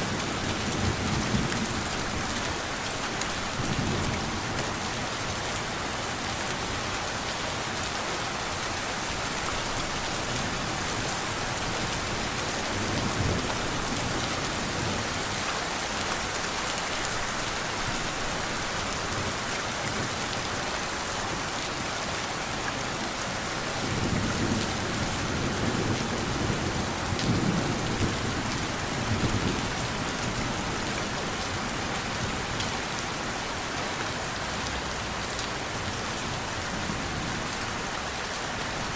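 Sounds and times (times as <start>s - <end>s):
steady rain pouring: 0.0s - 38.9s.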